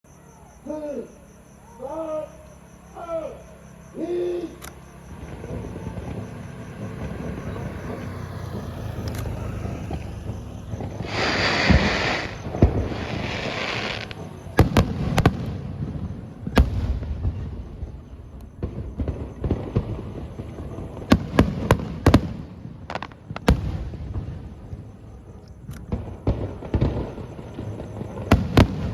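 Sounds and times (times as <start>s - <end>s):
fireworks bangs: 4.7s - 28.9s
fireworks hissing rush: 5.1s - 17.8s, 18.6s - 24.9s.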